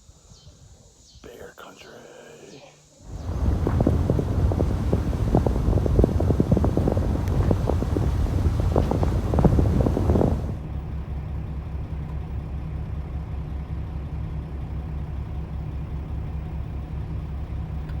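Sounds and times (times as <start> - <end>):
muffled car engine throbbing: 3.1 - 10.7.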